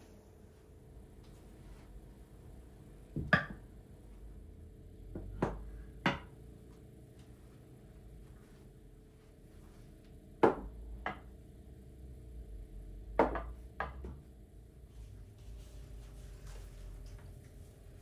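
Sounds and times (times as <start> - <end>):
sharp knocks of hard objects: 5.1 - 6.4, 10.4 - 11.3, 13.1 - 14.2.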